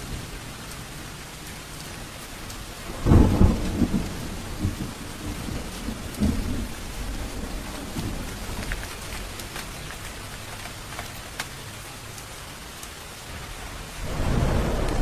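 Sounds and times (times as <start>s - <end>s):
raindrops ticking sharply: 0.0s - 15.0s
steady rain falling: 0.0s - 15.0s
low thunder rumble: 2.0s - 10.6s, 13.8s - 15.0s.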